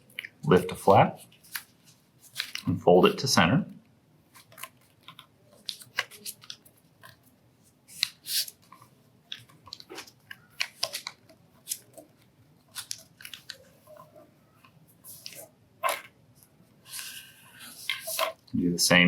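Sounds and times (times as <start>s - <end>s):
paper crinkling as folded: 1.3s - 2.7s, 4.4s - 7.2s, 7.9s - 14.1s, 16.8s - 18.5s.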